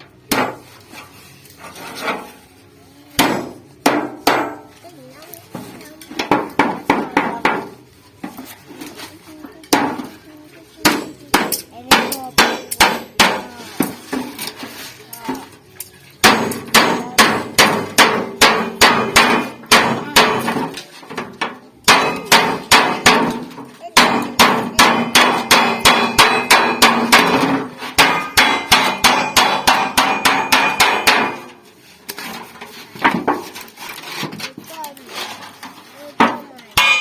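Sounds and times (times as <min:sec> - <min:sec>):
hammer blows on sheet metal: 0:03.2 - 0:04.8, 0:10.8 - 0:14.3, 0:16.2 - 0:31.6, 0:36.2 - 0:37.0.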